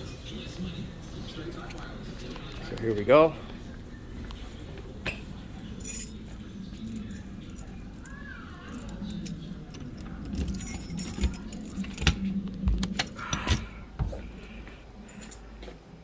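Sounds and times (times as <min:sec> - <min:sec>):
faint steady hum: 0:00.0 - 0:16.0
metal jangling: 0:05.8 - 0:14.4, 0:15.0 - 0:15.5.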